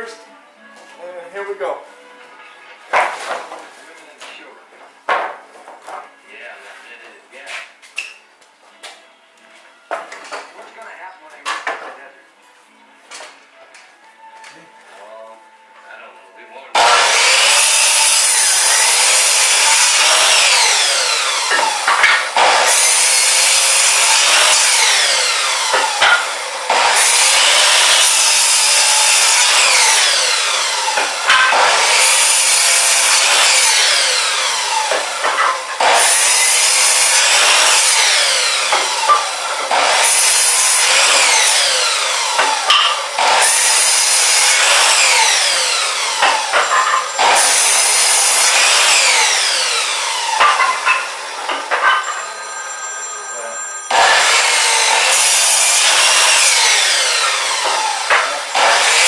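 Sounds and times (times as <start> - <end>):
chop saw cutting wood: 16.8 - 52.6, 53.9 - 59.0.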